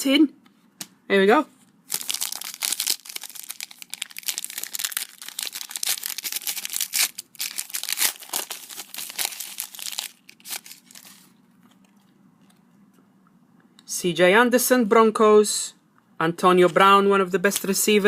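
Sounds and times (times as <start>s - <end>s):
wrapper tearing and crinkling: 1.9s - 11.3s.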